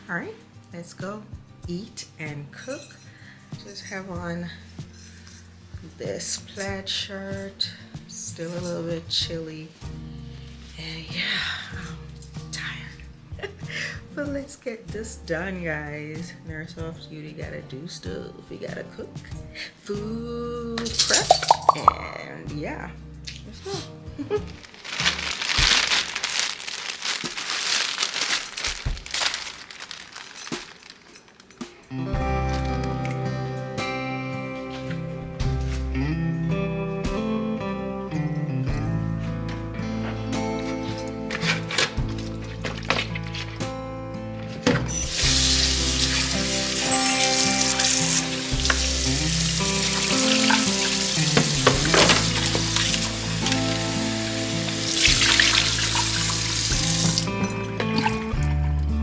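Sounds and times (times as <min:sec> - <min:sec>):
background music: 0:00.0 - 0:26.7, 0:31.6 - 0:59.0
plastic packaging crinkling: 0:24.5 - 0:31.9, 0:45.1 - 0:58.2
food sizzling in a pan: 0:44.9 - 0:58.4.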